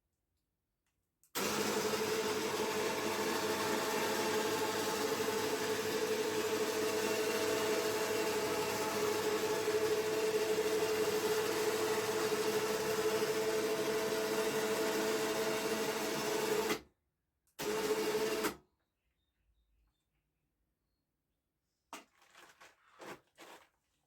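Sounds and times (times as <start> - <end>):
electric motor humming: 1.4 - 14.2.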